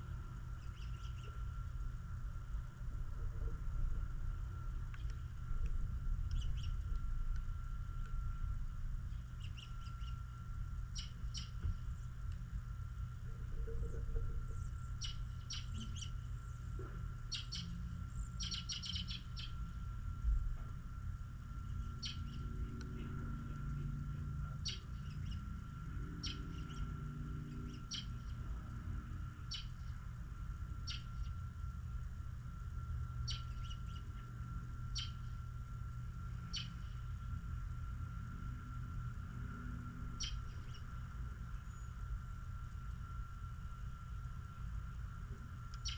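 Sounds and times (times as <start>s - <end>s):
small birds chirping: 0.0s - 1.6s, 6.3s - 7.0s, 9.1s - 12.1s, 13.7s - 19.8s, 21.6s - 28.4s, 29.4s - 30.0s, 30.7s - 31.4s, 33.2s - 35.3s, 36.3s - 37.2s, 40.2s - 42.0s
steady low rumble: 0.0s - 45.9s.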